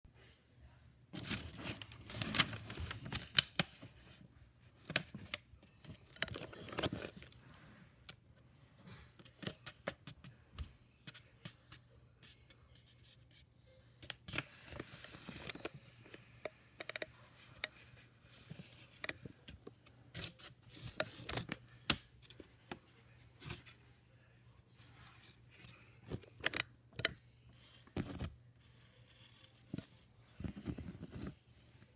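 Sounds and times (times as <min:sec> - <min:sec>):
packaging rustling and scraping: 0:01.2 - 0:04.2, 0:04.9 - 0:07.4.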